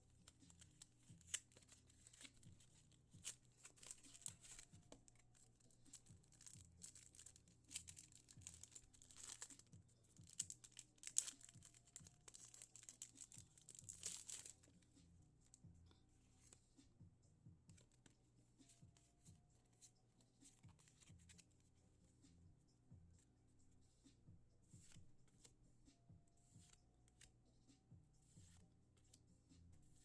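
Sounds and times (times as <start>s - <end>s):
foil wrapper crinkling and tearing: 5.9s - 9.6s, 10.3s - 14.5s.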